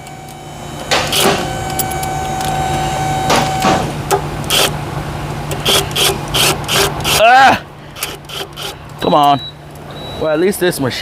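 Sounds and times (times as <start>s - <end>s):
held machine tone: 0.0s - 3.9s
shop machine humming: 0.0s - 10.2s.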